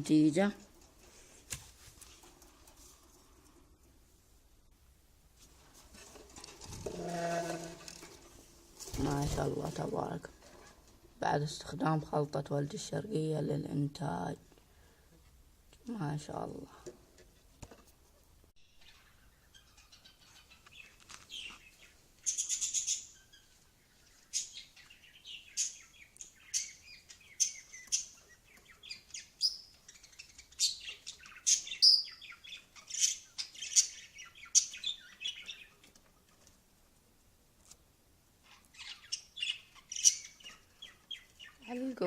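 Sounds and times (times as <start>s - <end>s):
lovebirds chirping: 18.6s - 36.0s, 38.4s - 42.0s.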